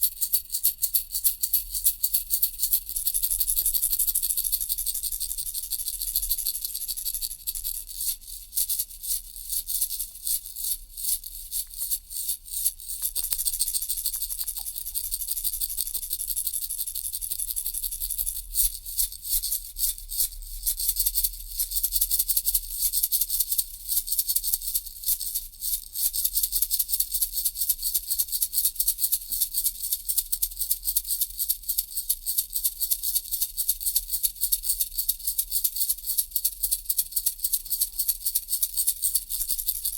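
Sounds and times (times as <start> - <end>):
baby rattle shaken: 0.0 - 21.0, 31.0 - 39.9.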